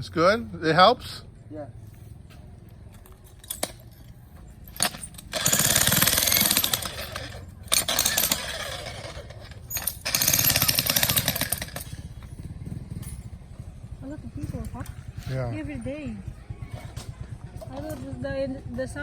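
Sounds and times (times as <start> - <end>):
jackhammer hammering rock: 4.7 - 19.0.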